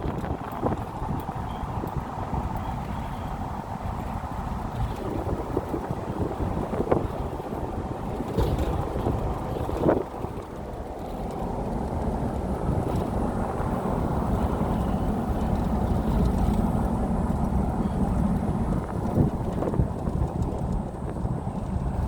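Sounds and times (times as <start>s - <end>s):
vehicle motor and road rumble: 0.0s - 22.0s
wind on microphone: 0.0s - 22.0s
vehicle bumps: 8.1s - 11.8s.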